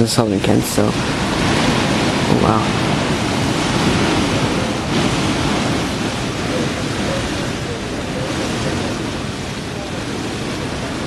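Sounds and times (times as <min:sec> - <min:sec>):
strong gusting wind: 0:00.0 - 0:11.0.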